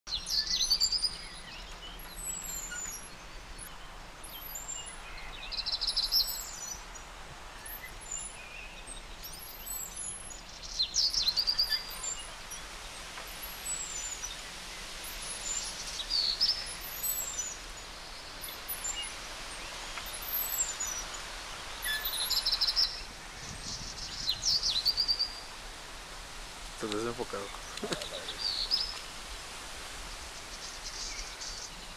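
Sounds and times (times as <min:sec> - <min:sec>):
bird song phrase: 0:00.1 - 0:12.7, 0:13.4 - 0:25.5, 0:26.8 - 0:29.1
birds chirping: 0:00.1 - 0:25.8, 0:26.7 - 0:29.4, 0:30.2 - 0:31.9
background hiss: 0:00.1 - 0:31.9.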